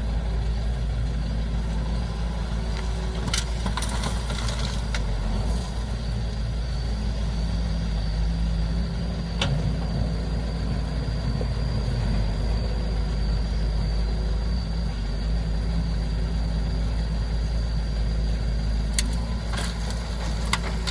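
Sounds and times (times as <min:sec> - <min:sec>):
heavy machinery engine rumbling: 0:00.0 - 0:20.9.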